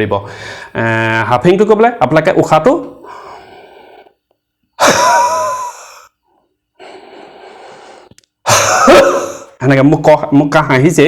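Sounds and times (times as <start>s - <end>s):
quiet breaths in: 0.2s - 0.8s, 2.9s - 4.5s, 5.8s - 8.4s.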